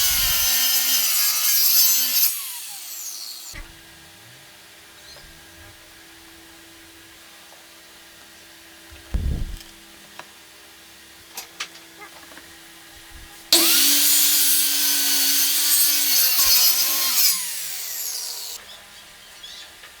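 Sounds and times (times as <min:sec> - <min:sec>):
miter saw cutting wood: 0:00.0 - 0:03.6, 0:13.5 - 0:18.6
saw motor winding down: 0:00.0 - 0:03.6, 0:13.5 - 0:18.6
thump and light knocks: 0:08.9 - 0:09.8.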